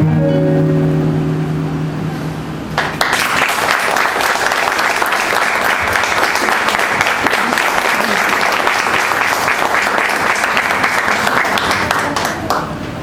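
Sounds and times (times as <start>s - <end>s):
nylon-string guitar chord ringing: 0.0s - 2.9s
audience applause: 2.8s - 12.8s.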